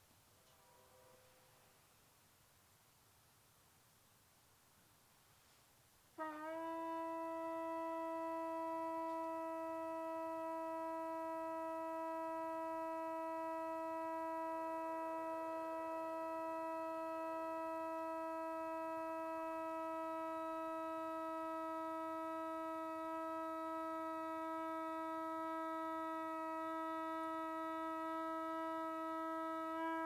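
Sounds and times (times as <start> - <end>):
shofar long held note: 6.2 - 30.0.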